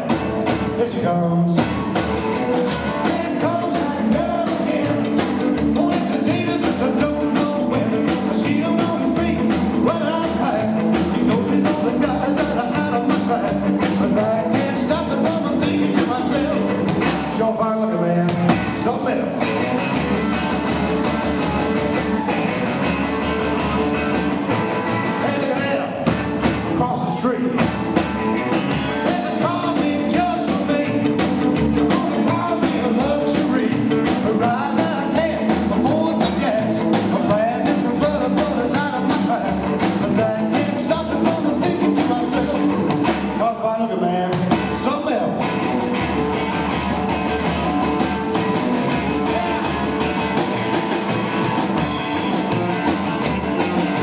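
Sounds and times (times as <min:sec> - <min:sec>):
man singing lead vocal: 0:00.0 - 0:19.6, 0:25.0 - 0:27.9, 0:28.6 - 0:45.6
rockabilly band playing: 0:00.0 - 0:54.0.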